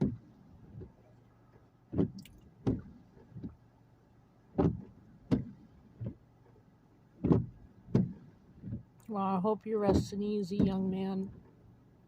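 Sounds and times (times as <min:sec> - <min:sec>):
dull thuds: 0:00.0 - 0:01.0, 0:01.9 - 0:03.6, 0:04.5 - 0:06.2, 0:07.2 - 0:09.0, 0:09.8 - 0:11.5.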